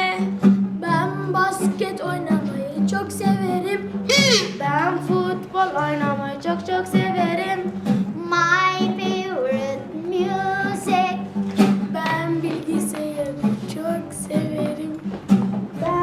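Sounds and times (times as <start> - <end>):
child singing: 0.0 - 11.3, 11.9 - 15.1, 15.8 - 16.0
backing music: 0.4 - 16.0.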